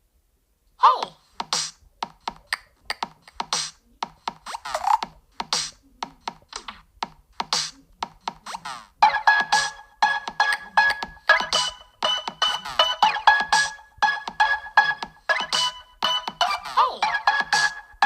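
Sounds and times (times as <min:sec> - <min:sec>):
ringtone held electronic tones: 0:08.5 - 0:18.0
phone ringtone clicky percussive notes: 0:09.0 - 0:17.9.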